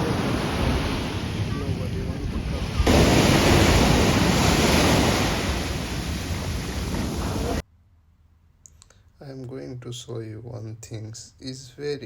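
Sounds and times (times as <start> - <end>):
sea surf washing: 0.0 - 7.6
wind buffeting microphone: 0.0 - 7.6.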